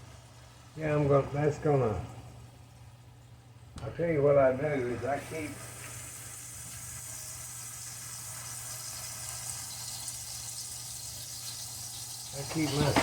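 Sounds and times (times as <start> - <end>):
burger patties sizzling in skillet: 4.2 - 13.0.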